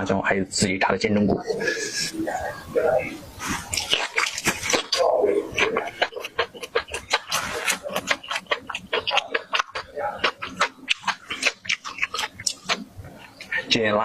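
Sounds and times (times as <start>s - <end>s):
mouth clicks: 1.4s - 13.7s
crunchy chewing of fried food: 3.4s - 13.6s.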